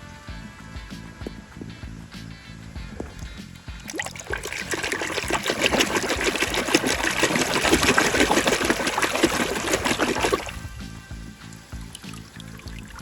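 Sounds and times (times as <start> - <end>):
background music: 0.0 - 13.0
water pouring and splashing: 3.0 - 10.7, 11.5 - 13.0.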